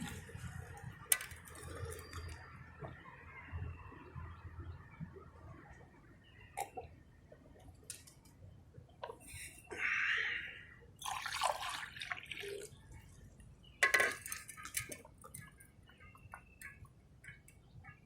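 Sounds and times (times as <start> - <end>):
water splashing in a glass: 11.0 - 12.8, 13.8 - 15.6.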